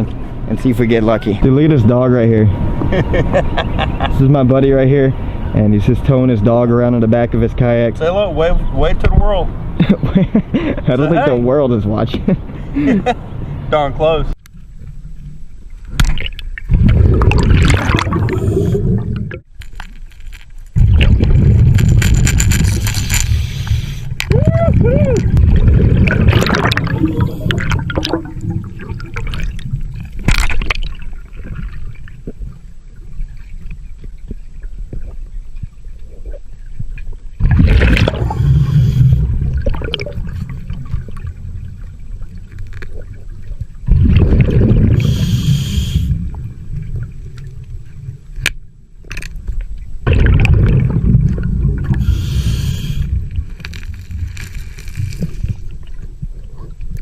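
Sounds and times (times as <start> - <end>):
low underwater rumble: 14.5 - 19.6, 20.7 - 57.0
exhaled air bubbling: 15.9 - 19.5, 20.8 - 35.2, 36.0 - 48.4, 50.0 - 57.0.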